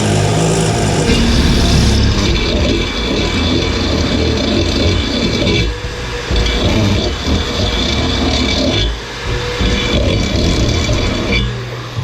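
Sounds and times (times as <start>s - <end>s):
electric drill boring through metal: 0.0s - 2.0s.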